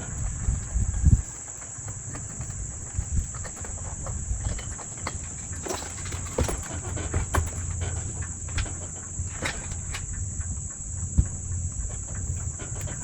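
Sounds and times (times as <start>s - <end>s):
low rumble: 0.0s - 1.4s.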